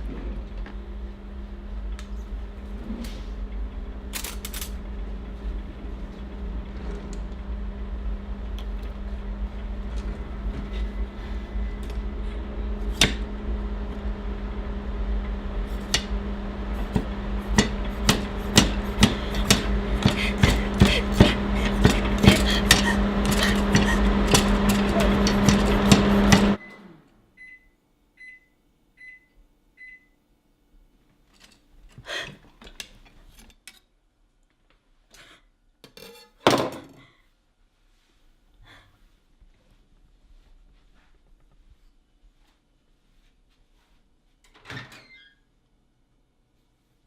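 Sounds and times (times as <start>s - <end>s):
low hum: 0.0s - 27.4s.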